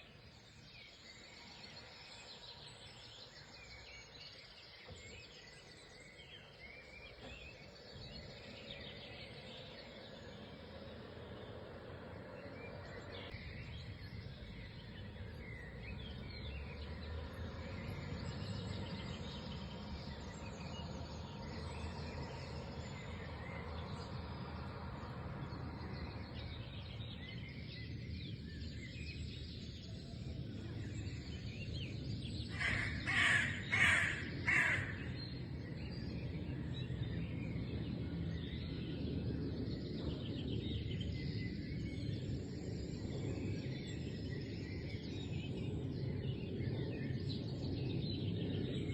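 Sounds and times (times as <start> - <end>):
low background rumble: 0.0 - 48.9
crow cawing: 32.5 - 35.2.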